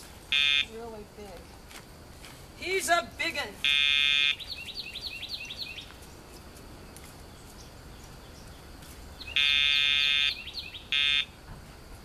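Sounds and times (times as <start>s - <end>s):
electronic buzz: 0.3s - 0.7s, 3.6s - 4.4s, 9.4s - 11.4s.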